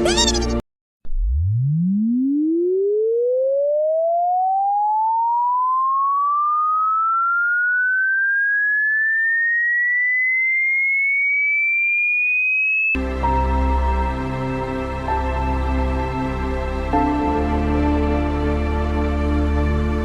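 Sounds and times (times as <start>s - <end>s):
rising sine-wave tone: 1.1s - 13.0s.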